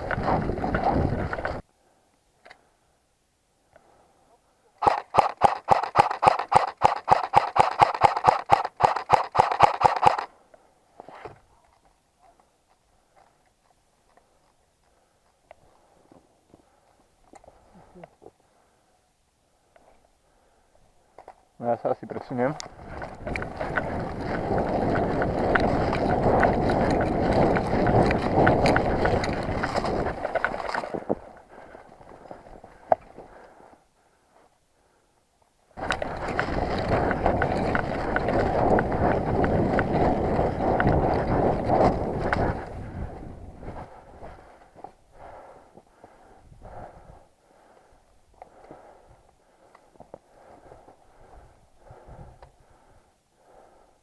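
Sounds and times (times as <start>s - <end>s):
running footsteps: 0.0s - 1.6s, 22.3s - 33.7s, 35.8s - 47.0s
wind rushing on microphone: 0.0s - 1.6s, 22.5s - 30.7s, 35.8s - 44.4s, 46.4s - 47.2s, 51.2s - 52.5s
gear rattling: 22.4s - 31.4s, 35.8s - 42.8s.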